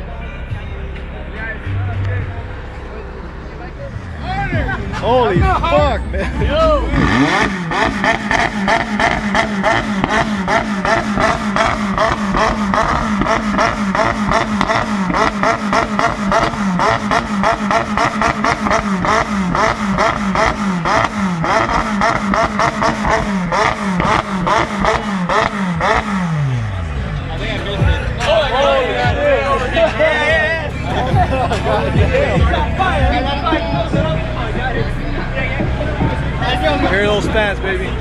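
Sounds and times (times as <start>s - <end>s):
car engine bouncing off rev limiter: 6.9s - 28.4s.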